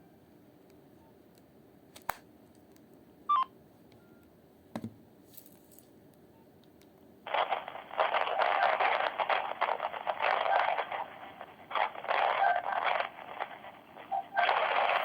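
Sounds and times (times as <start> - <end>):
electronic keypad beep: 3.3 - 4.2.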